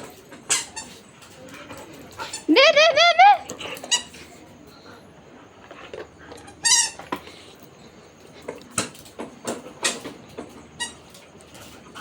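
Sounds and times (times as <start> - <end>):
dog toy squeak: 6.6 - 7.0.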